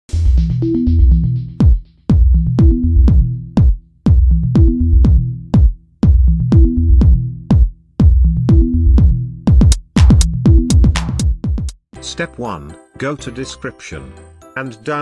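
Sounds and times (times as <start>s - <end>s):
deep bass line: 0.1s - 11.7s
electronic music with drum machine: 0.1s - 11.8s.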